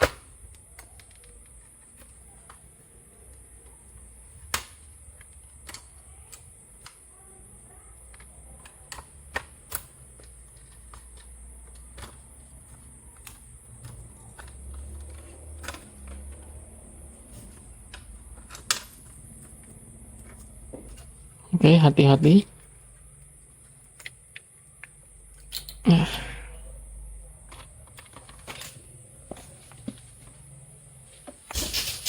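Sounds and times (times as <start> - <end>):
steady high hiss: 30.4 - 32.0.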